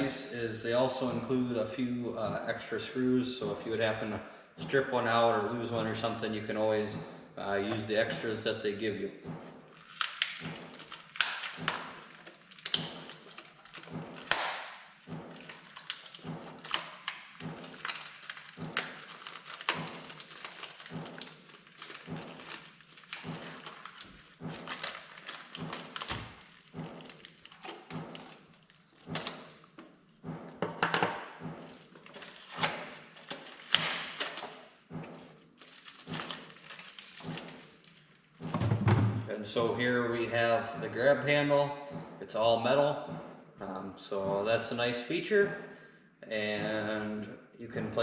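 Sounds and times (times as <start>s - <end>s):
packaging rustling: 9.4s - 30.2s, 31.6s - 38.7s.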